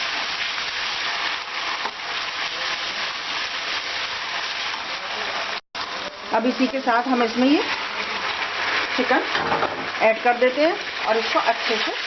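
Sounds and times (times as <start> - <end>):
onions sizzling in hot oil: 0.0 - 12.0.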